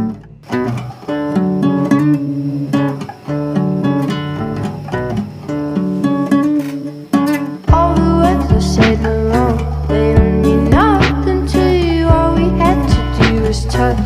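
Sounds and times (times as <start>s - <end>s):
acoustic guitar music: 0.0s - 14.0s.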